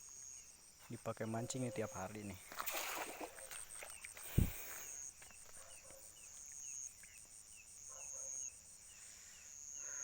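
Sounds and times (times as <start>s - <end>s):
insect high buzz: 2.5s - 10.0s.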